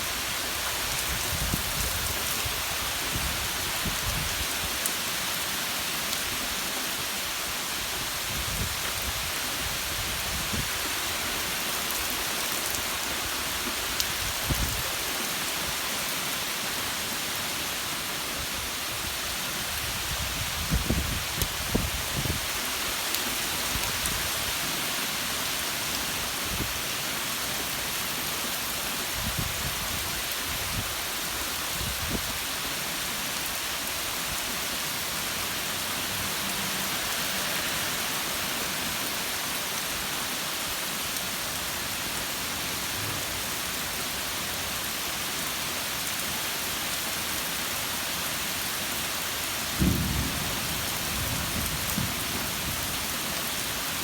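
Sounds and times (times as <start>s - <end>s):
steady rain hiss: 0.0s - 54.0s.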